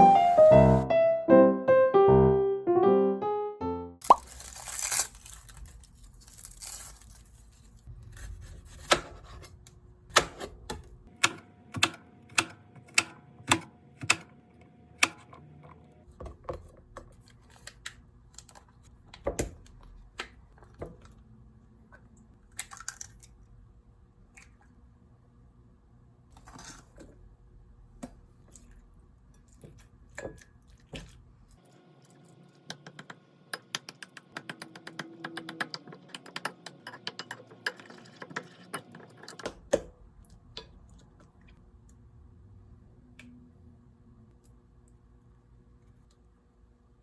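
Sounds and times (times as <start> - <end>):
rustling: 4.2 - 8.2.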